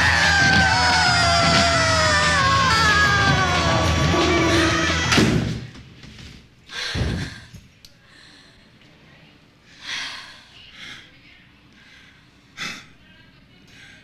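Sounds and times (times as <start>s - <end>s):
music: 0.0s - 5.8s.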